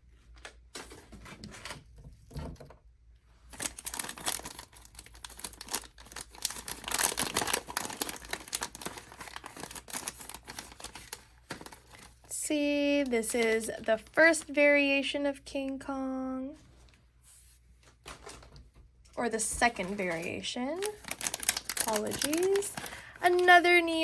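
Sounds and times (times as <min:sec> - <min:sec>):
packaging torn and crinkled: 0:03.5 - 0:12.3, 0:19.8 - 0:23.6.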